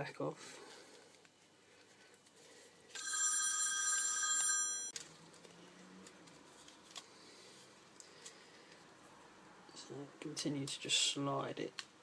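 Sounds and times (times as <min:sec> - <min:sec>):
telephone ringing: 0:02.9 - 0:05.0.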